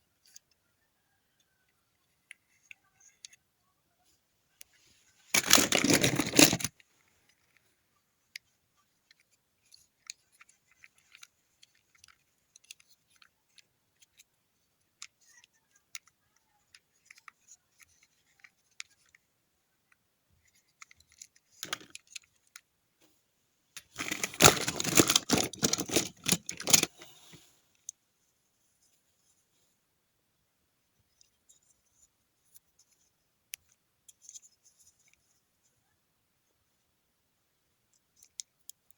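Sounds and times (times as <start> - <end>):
packaging rustling and clattering: 5.3 - 6.8, 21.6 - 22.0, 23.8 - 27.4
toy cars clicking: 5.3 - 7.6, 8.3 - 19.2, 19.9 - 22.6, 23.8 - 27.2.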